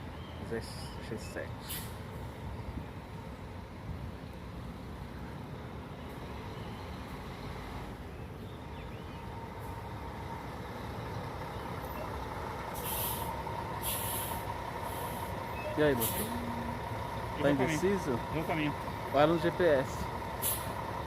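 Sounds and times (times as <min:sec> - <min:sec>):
diesel bus engine running: 0:00.0 - 0:21.0
air brake hisses: 0:01.6 - 0:02.0, 0:12.8 - 0:15.3, 0:16.0 - 0:16.3, 0:20.4 - 0:20.8.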